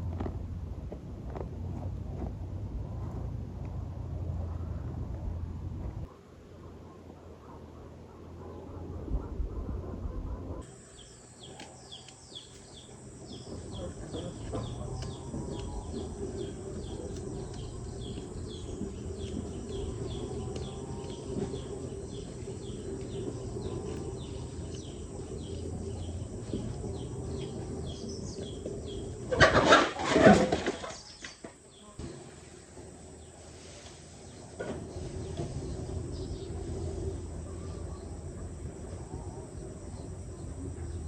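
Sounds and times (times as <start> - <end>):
steady background noise: 0.0 - 41.0
small bird chirping: 10.6 - 29.2.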